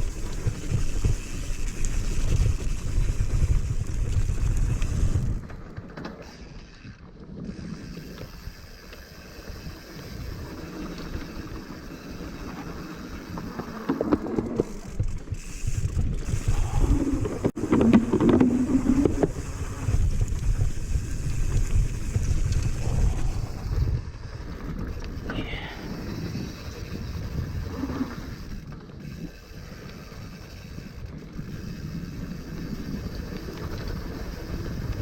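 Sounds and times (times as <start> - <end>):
bike tyres and frame rattling: 0.0 - 35.0
wind rushing over microphone: 14.9 - 28.6.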